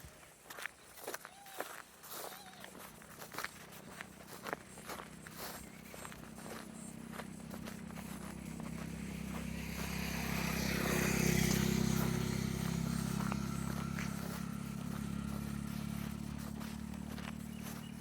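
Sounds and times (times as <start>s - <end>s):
vehicle engine passing by: 2.6s - 18.0s.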